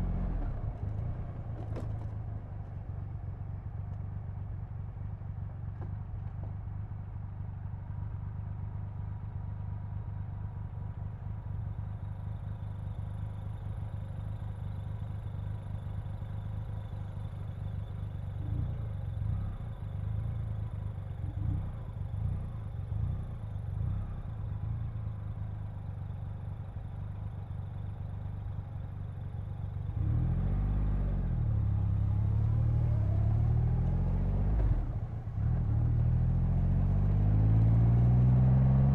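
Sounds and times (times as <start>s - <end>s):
low engine rumble: 0.0s - 30.8s.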